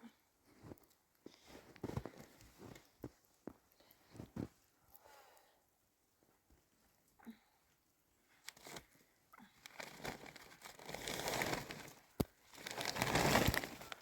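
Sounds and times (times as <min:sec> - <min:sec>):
crunching rustling: 0:09.7 - 0:14.0.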